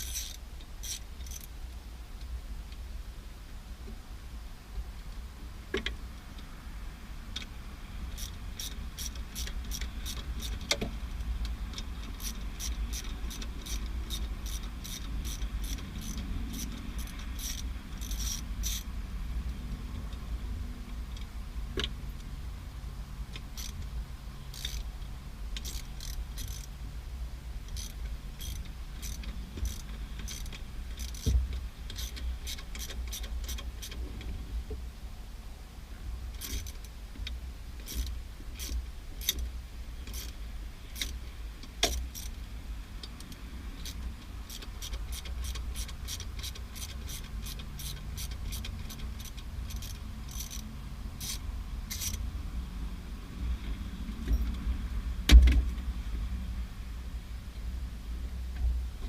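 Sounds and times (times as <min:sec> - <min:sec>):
socket ratchet clicking: 0:00.0 - 0:01.5, 0:11.8 - 0:18.9, 0:24.5 - 0:24.9, 0:25.6 - 0:26.7, 0:27.7 - 0:34.0, 0:43.1 - 0:52.2.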